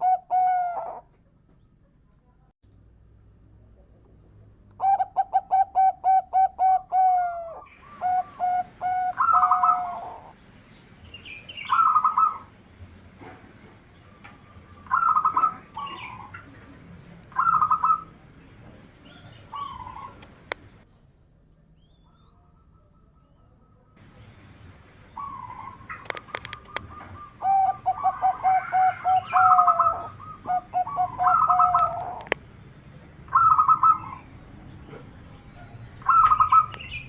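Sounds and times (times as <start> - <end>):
dove cooing: 0.0 - 1.1, 4.8 - 10.4, 11.5 - 12.5, 14.0 - 18.2, 19.0 - 20.6, 25.1 - 32.4, 33.3 - 34.3, 36.0 - 36.8.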